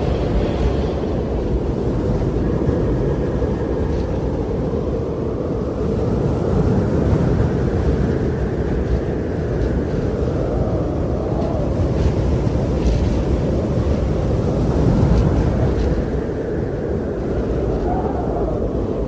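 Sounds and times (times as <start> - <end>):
wind blowing: 0.0 - 19.0.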